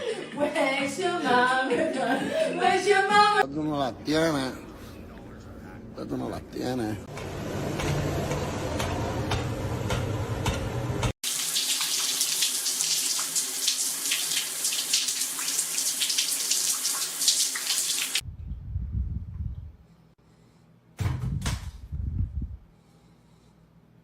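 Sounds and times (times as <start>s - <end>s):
running water hissing: 11.2s - 18.2s.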